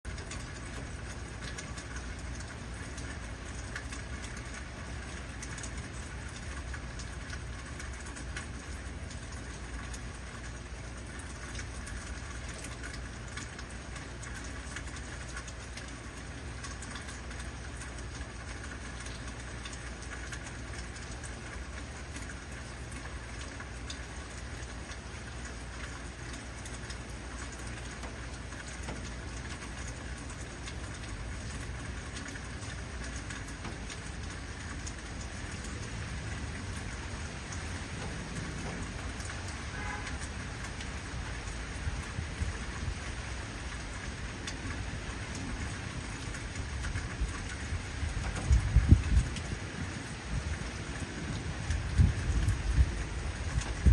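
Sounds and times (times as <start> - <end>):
raindrop ticks: 0.0 - 53.9
heavy rain hiss: 21.3 - 53.9.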